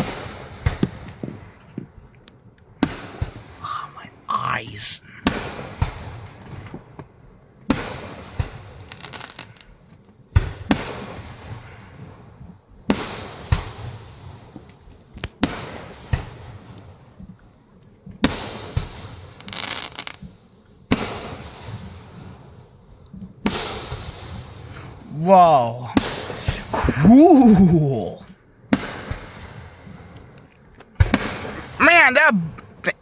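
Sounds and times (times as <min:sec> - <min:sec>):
fireworks booming: 0:00.0 - 0:02.1, 0:02.7 - 0:22.7, 0:23.3 - 0:30.3, 0:31.0 - 0:32.8.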